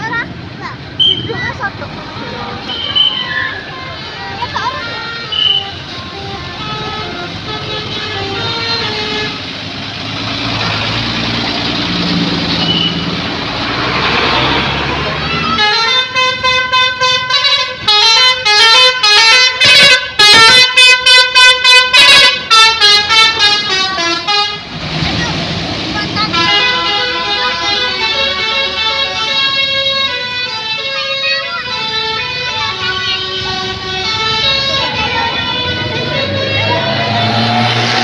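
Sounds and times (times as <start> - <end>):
vehicle noise: 0.0 - 38.0
bus musical horn playing tune: 2.2 - 9.6, 15.4 - 24.8, 26.2 - 38.0.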